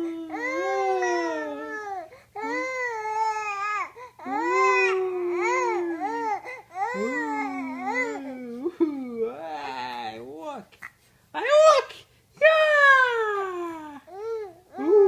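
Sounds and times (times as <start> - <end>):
baby cooing: 0.0 - 9.9.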